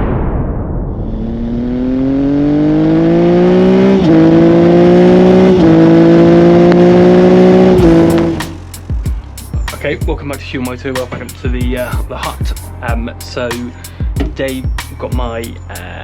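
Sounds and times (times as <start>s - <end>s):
vehicle engine accelerating: 1.1s - 9.6s.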